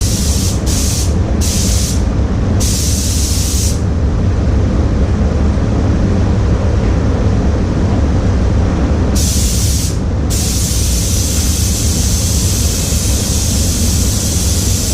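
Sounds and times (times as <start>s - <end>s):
paint spray gun hissing: 0.0s - 2.0s, 2.6s - 3.8s, 9.2s - 14.9s
steady low rumble: 0.0s - 14.9s.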